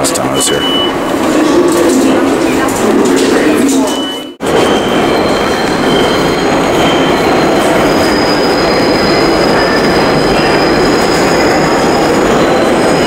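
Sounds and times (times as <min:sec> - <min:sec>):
subway train rumble: 0:00.0 - 0:13.0
high-pitched wheel squeal: 0:03.7 - 0:13.0.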